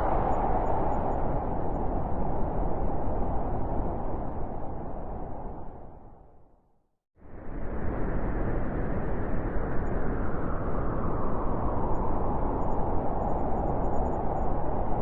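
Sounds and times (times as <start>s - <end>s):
strong wind howling: 0.0s - 6.6s, 7.2s - 15.0s.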